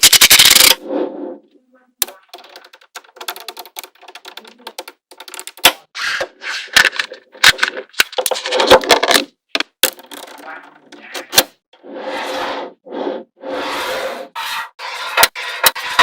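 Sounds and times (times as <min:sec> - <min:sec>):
magnetic balls clicking together: 0:00.0 - 0:00.8, 0:02.0 - 0:05.9.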